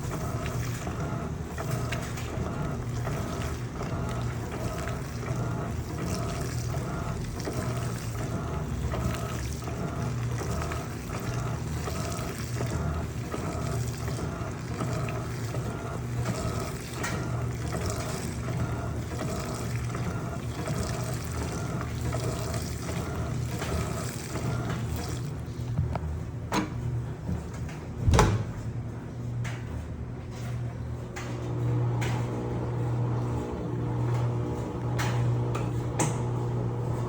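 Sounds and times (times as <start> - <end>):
water moving: 0.0 - 25.8
washing machine motor hum: 0.0 - 37.0
washing machine click: 27.6 - 28.8
washing machine thump: 28.0 - 28.8.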